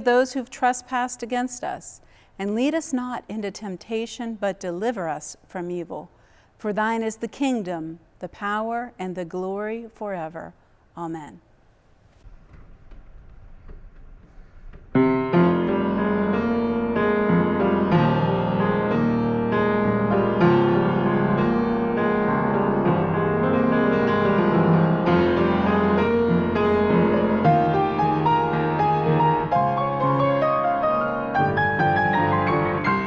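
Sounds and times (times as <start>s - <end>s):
piano music: 14.9s - 33.0s.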